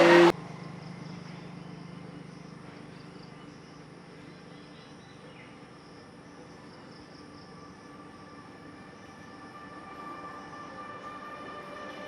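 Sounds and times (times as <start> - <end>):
insects chirring: 0.6 - 11.2
low hum: 6.3 - 12.0.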